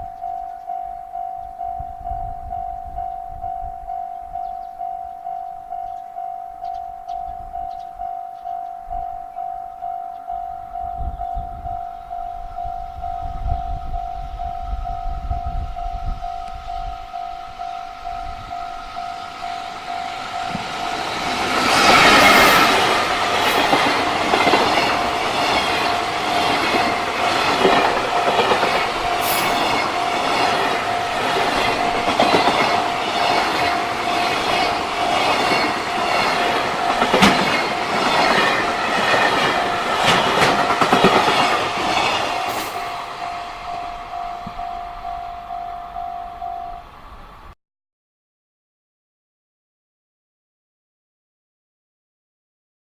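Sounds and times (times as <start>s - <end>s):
level crossing bell ringing: 0.0s - 47.0s
train wheels clickety-clack: 20.4s - 43.3s.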